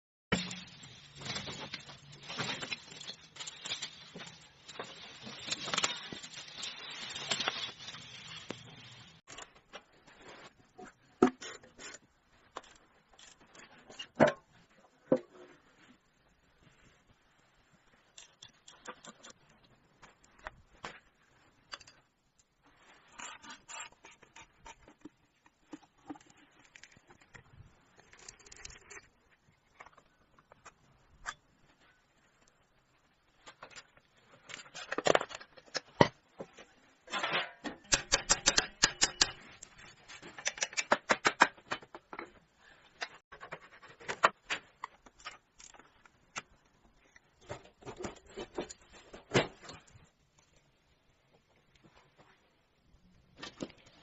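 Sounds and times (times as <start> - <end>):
clicking and tapping on metal: 37.8 - 39.4.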